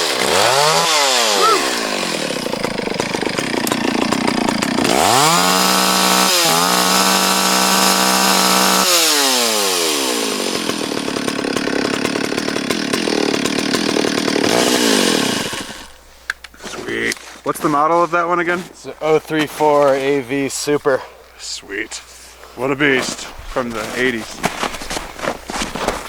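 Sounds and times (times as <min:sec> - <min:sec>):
chainsaw revving and idling: 0:00.0 - 0:16.1.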